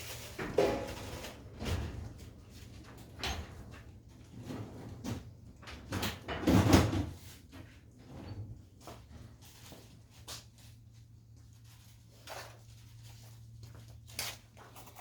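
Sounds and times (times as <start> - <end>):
tools and metal parts clunking: 0.0 - 7.1.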